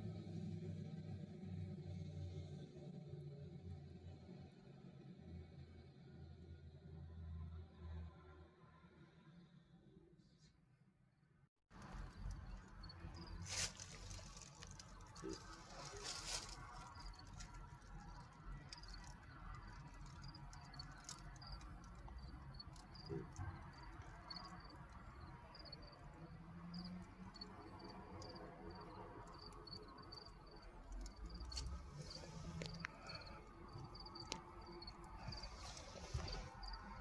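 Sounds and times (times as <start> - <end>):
faint insect chirping: 11.8 - 37.0.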